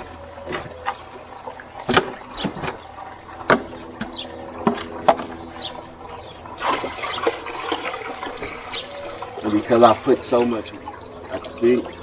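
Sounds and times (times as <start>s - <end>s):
water pouring from a bucket: 6.3s - 12.0s.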